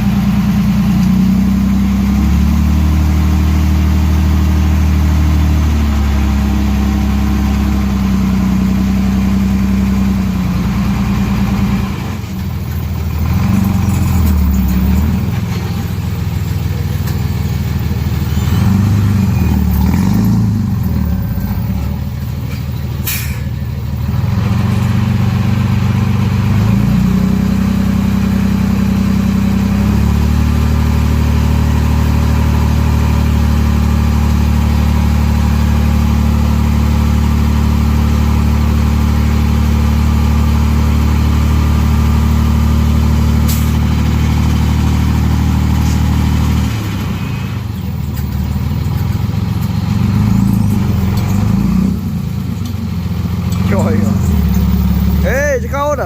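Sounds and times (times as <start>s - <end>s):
bulldozer diesel engine: 0.0s - 56.0s.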